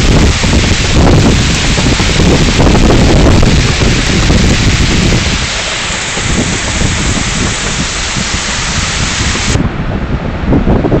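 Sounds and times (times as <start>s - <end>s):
hail and rain pelting down: 0.0s - 9.6s
wind buffeting microphone: 0.0s - 11.0s.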